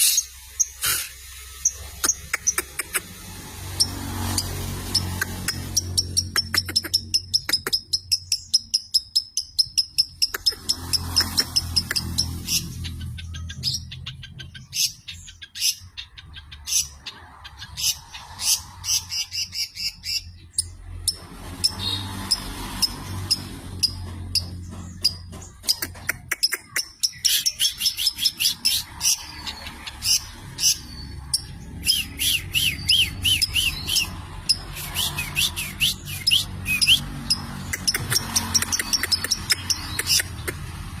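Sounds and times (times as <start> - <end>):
bird singing chirps and whistles: 26.5 - 37.1.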